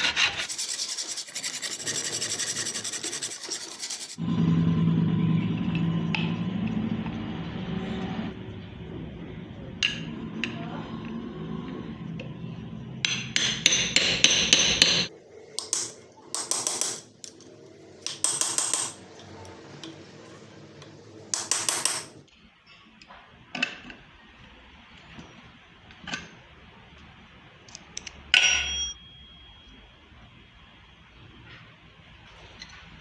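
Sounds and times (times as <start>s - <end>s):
hammer striking metal: 13.0s - 17.1s, 28.3s - 29.7s.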